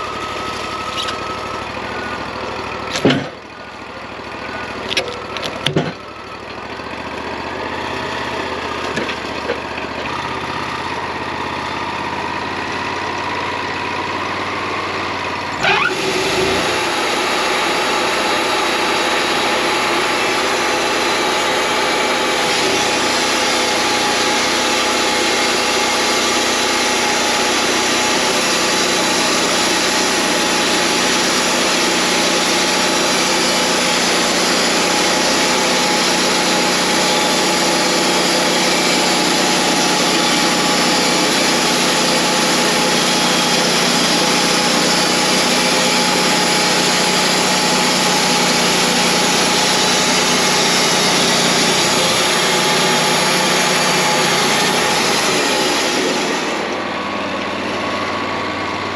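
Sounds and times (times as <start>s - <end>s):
bandsaw sawmill humming: 0.0s - 58.9s.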